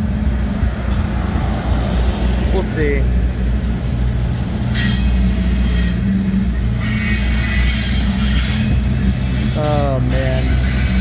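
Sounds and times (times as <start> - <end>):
train wheels rumbling on rail: 0.0 - 11.0
metallic wheel squeal: 4.6 - 11.0.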